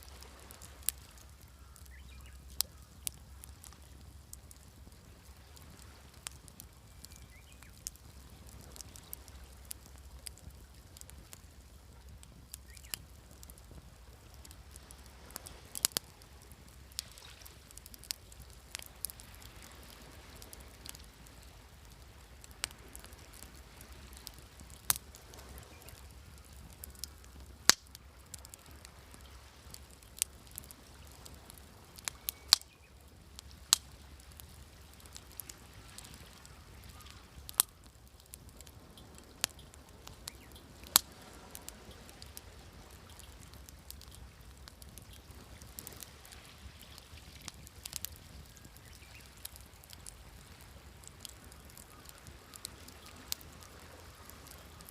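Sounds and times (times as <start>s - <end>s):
campfire crackling and popping: 0.0s - 54.9s.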